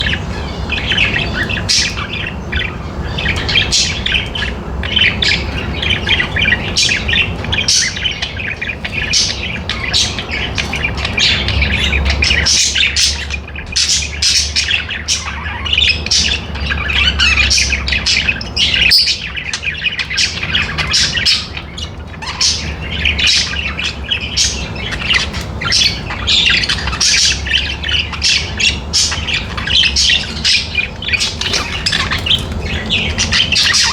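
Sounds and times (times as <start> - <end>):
budgerigars chirping and squawking: 0.0 - 33.9
steady low hum: 0.0 - 33.9.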